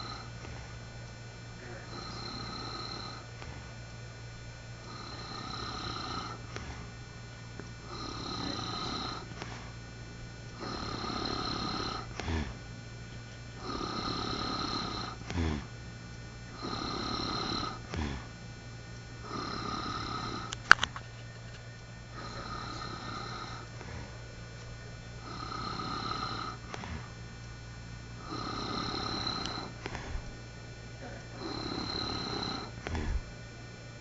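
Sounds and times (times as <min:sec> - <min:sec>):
man snoring: 0:00.0 - 0:00.8, 0:01.6 - 0:03.8, 0:04.7 - 0:07.0, 0:07.8 - 0:09.8, 0:10.5 - 0:15.8, 0:16.5 - 0:18.4, 0:19.2 - 0:20.8, 0:22.0 - 0:27.2, 0:28.2 - 0:30.4, 0:31.0 - 0:33.4.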